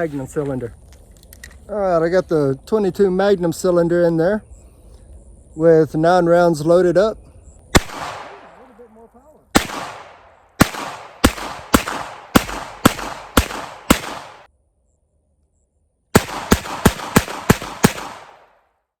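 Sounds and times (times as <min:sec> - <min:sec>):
revolver shots with echo: 0:07.8 - 0:08.6, 0:09.6 - 0:14.5.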